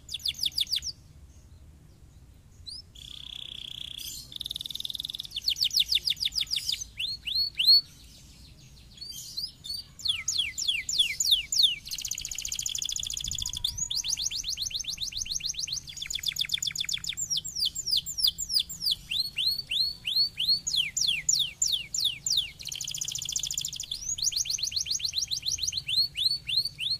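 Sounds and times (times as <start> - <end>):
canary singing trills: 0.0 - 1.6, 2.2 - 26.9.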